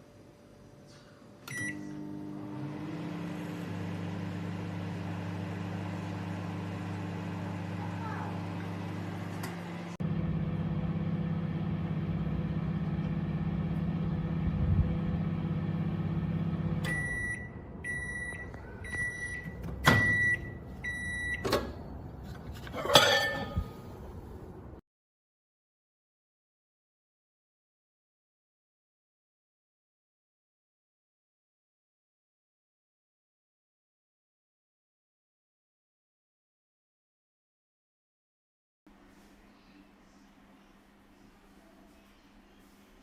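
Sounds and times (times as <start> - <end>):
microwave oven humming: 0.1 - 22.1
microwave beeps: 1.5 - 2.7, 15.2 - 21.7.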